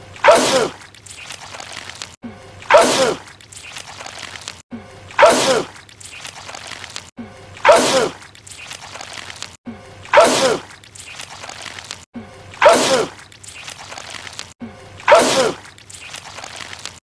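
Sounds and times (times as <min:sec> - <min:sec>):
man sneezing loudly: 0:10.2 - 0:10.6, 0:15.1 - 0:15.6.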